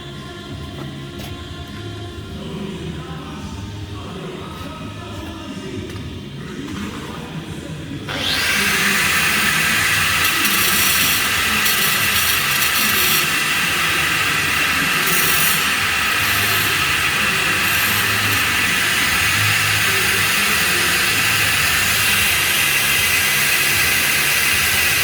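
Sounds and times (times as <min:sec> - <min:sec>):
welding arc hissing: 0:08.1 - 0:25.0.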